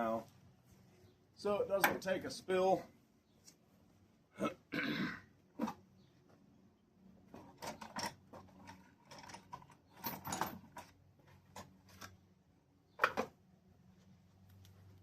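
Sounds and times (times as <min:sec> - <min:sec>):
metal parts and tools clattering: 0:07.3 - 0:12.1.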